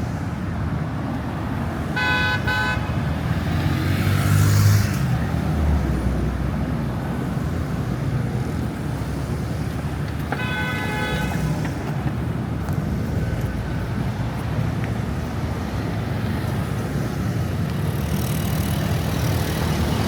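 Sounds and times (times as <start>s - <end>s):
street traffic: 0.0s - 20.0s
car horn: 1.9s - 3.0s, 10.3s - 11.6s
vehicle passing close by: 2.5s - 7.9s.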